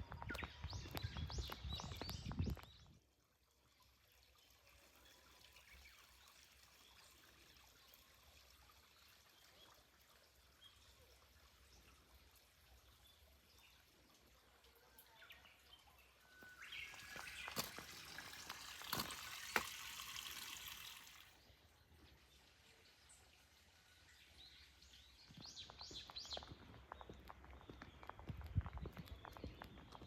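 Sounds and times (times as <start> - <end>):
water splashing: 16.9 - 21.3
light footsteps: 25.3 - 30.0.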